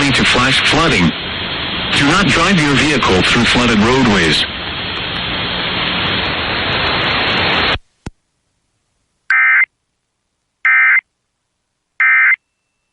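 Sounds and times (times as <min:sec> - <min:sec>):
radio static hiss: 0:00.0 - 0:08.2.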